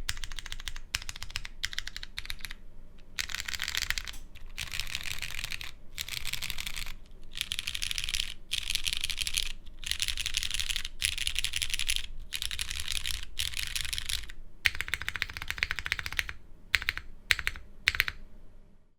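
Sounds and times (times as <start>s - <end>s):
typing on mechanical keyboard: 0.0s - 18.2s.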